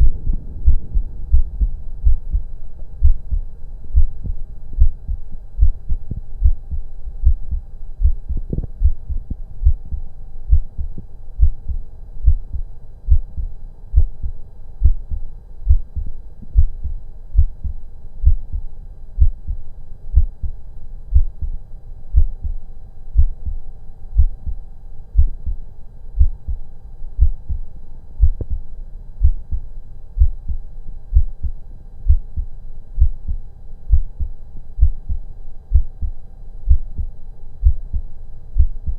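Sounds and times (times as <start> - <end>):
heartbeat through stethoscope: 0.0 - 22.6, 23.2 - 23.6, 24.2 - 24.6, 25.2 - 25.6, 26.2 - 26.6, 27.2 - 28.6, 29.2 - 38.9.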